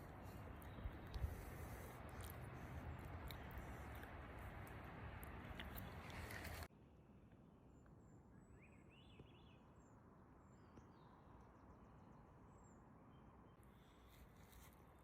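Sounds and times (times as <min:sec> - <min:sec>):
light rustling: 0:00.0 - 0:06.7.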